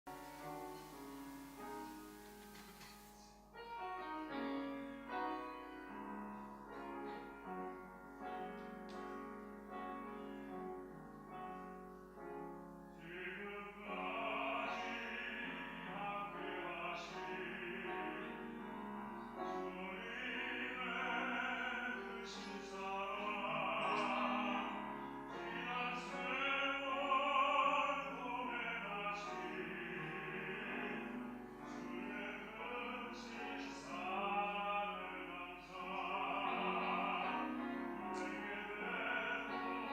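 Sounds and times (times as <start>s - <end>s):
piano accompaniment: 0.0s - 39.9s
baritone singing operatic solo: 13.0s - 18.6s, 19.4s - 39.9s.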